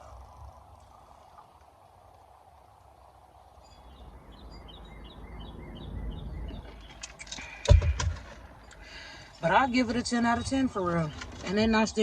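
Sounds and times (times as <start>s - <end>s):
bird chirping: 2.8s - 12.0s.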